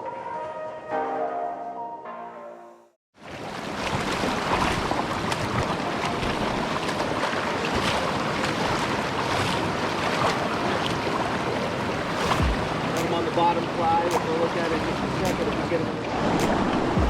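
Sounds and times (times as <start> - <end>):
background music: 0.0 - 3.0
river water rushing: 3.2 - 17.0.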